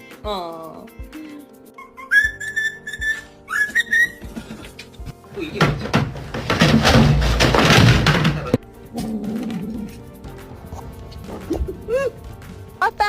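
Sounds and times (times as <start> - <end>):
background music: 0.0 - 13.0
high whistle-like tone: 1.8 - 4.2.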